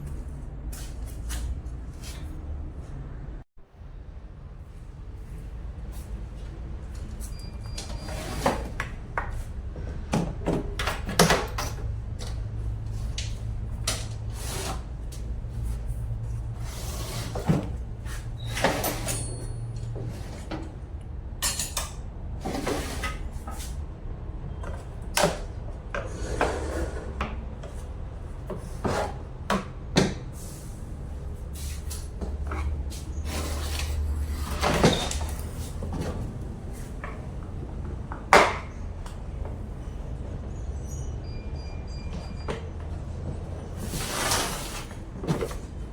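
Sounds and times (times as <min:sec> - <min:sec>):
tools and metal parts clanking: 0:18.4 - 0:20.8, 0:21.4 - 0:23.2, 0:32.4 - 0:36.3.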